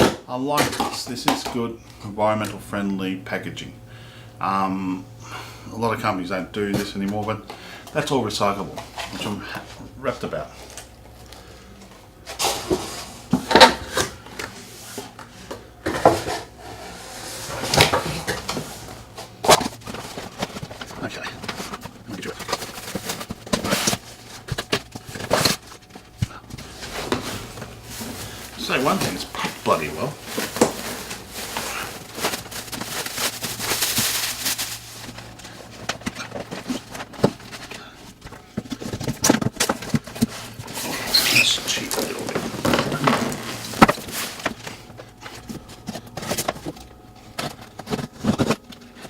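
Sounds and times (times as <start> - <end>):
cardboard scraping and knocking: 15.9 - 37.6
packing material crackling: 17.6 - 44.9.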